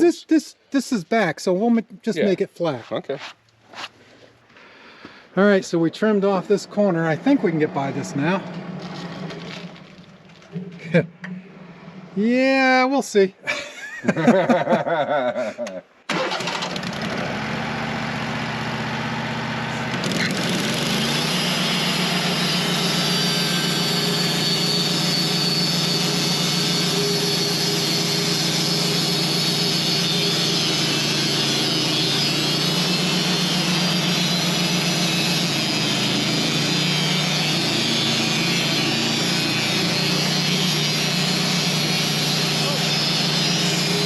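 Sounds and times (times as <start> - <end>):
sawmill engine running: 4.9 - 13.3, 16.1 - 44.0
saw blade cutting log: 6.2 - 12.0, 19.8 - 44.0.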